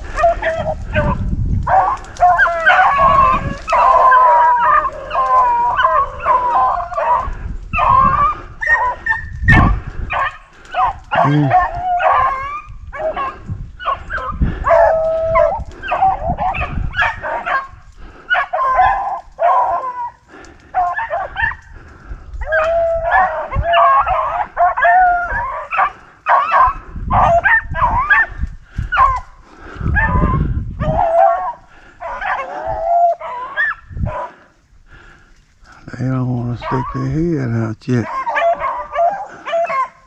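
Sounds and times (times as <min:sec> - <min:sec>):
dogs baying and yelping: 0:00.0 - 0:40.0.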